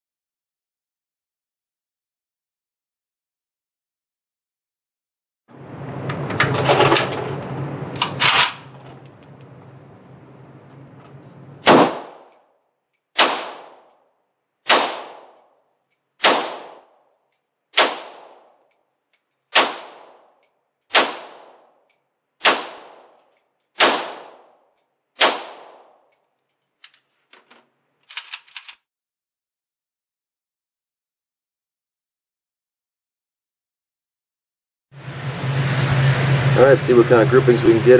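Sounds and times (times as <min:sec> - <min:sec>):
rifle shots with echo: 0:11.6 - 0:12.3, 0:13.2 - 0:13.9, 0:14.6 - 0:15.4, 0:16.2 - 0:17.0, 0:17.8 - 0:18.6, 0:19.5 - 0:20.3, 0:20.9 - 0:21.7, 0:22.4 - 0:23.1, 0:23.8 - 0:24.6, 0:25.2 - 0:26.0
rifle handling clacks: 0:26.0 - 0:28.8.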